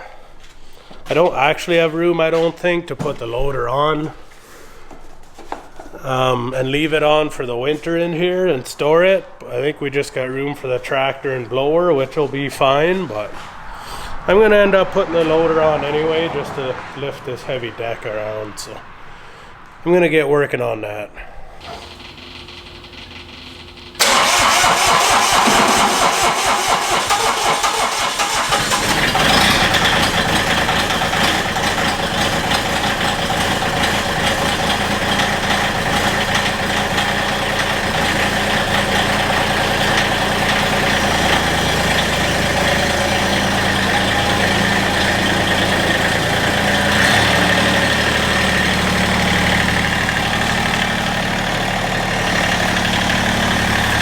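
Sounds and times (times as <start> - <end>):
tractor engine idling: 21.6 - 54.0.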